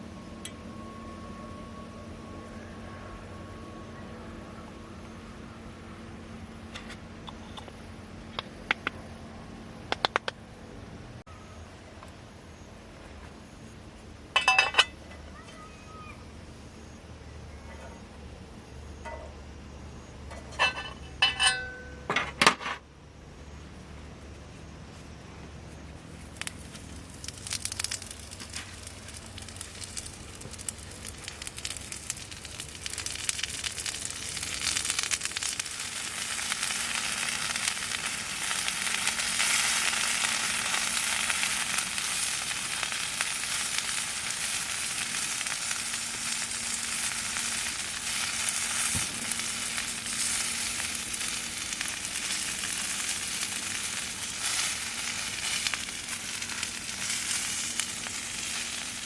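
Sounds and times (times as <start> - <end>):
food sizzling in hot oil: 26.2 - 59.0.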